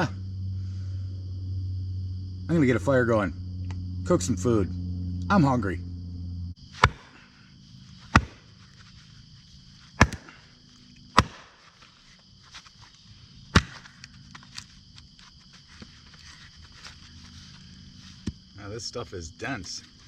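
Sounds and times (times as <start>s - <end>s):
axe chopping firewood: 6.6s - 9.0s, 9.9s - 12.0s, 13.5s - 14.6s, 18.2s - 18.4s.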